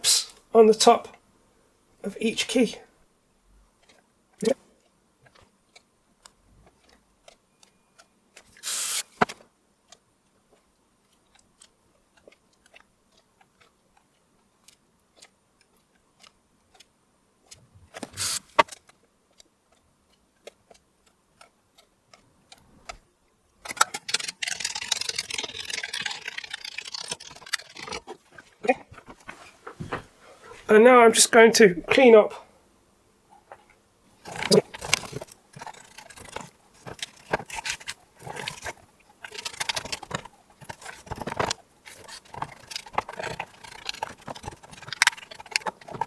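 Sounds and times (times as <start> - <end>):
rustling hiss: 8.6 - 9.2, 18.1 - 18.6
short hissing bursts: 8.6 - 9.2, 18.1 - 18.6.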